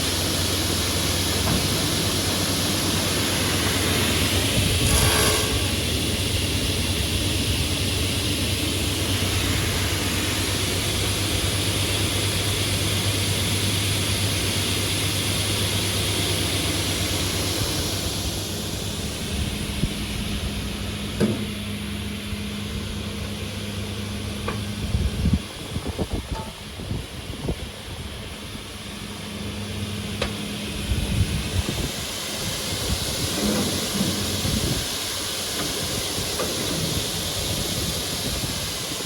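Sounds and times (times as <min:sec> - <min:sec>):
table saw humming: 0:00.8 - 0:11.9.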